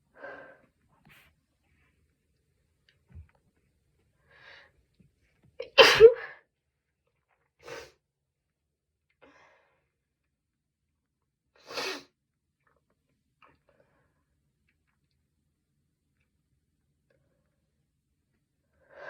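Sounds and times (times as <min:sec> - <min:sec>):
person sneezing: 0:05.7 - 0:06.3.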